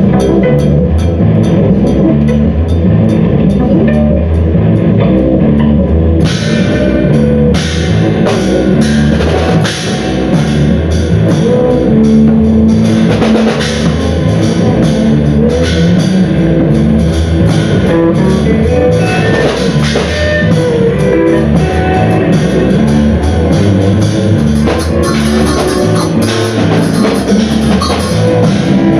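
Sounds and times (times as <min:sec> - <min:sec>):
busy drum kit playing: 0:00.0 - 0:28.9
guitar and bass notes: 0:00.0 - 0:28.9.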